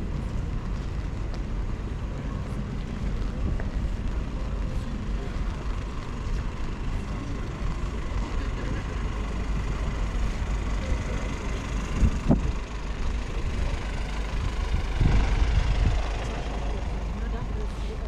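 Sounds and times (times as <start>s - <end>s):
low rumble: 0.0s - 18.0s
vehicle engine running: 0.0s - 18.0s.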